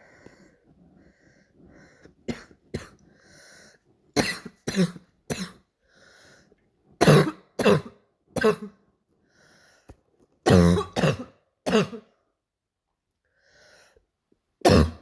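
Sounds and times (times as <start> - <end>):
faint breathing: 0.0 - 2.3, 2.9 - 4.1, 5.8 - 6.7, 9.2 - 10.1, 13.2 - 14.2
girl coughing: 4.2 - 5.7, 7.0 - 8.8, 10.5 - 12.1, 14.6 - 15.0.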